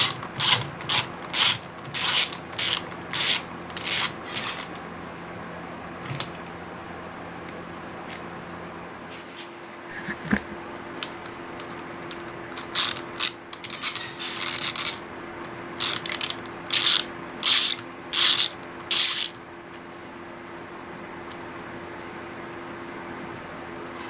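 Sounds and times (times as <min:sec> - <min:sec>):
ratchet wrench clicking: 0:00.0 - 0:04.8, 0:12.7 - 0:15.0, 0:15.8 - 0:19.4.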